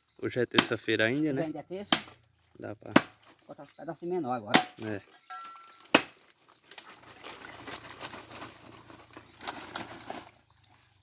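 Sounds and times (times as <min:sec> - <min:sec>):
firewood rustling and crackling: 0:04.6 - 0:11.0.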